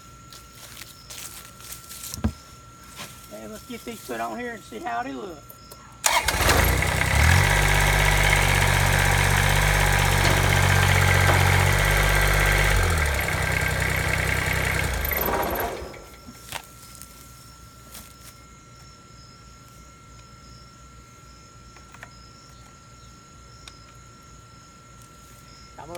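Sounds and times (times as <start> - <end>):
tractor diesel engine running: 6.0 - 16.4.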